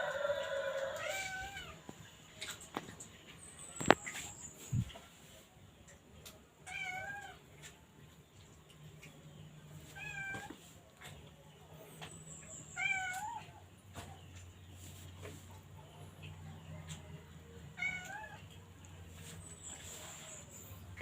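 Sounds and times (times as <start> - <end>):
cat meowing: 10.0 - 10.5, 17.8 - 18.4.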